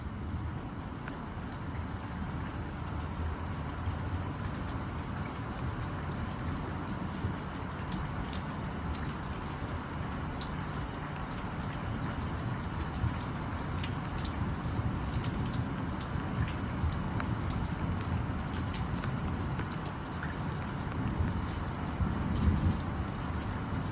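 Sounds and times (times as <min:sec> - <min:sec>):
rain falling: 0:00.0 - 0:23.9
raindrops ticking on surface: 0:00.0 - 0:23.9.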